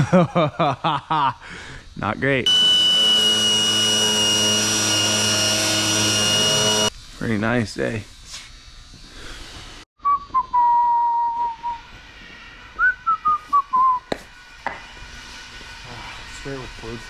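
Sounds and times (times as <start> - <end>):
person whistling: 10.0 - 11.9, 12.8 - 14.1.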